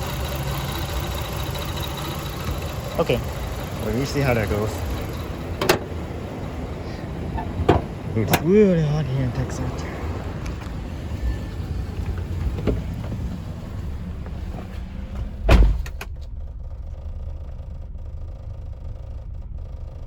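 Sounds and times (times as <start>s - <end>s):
car engine idling unevenly: 0.0s - 20.0s
car door shutting: 4.1s - 8.6s, 10.0s - 16.3s.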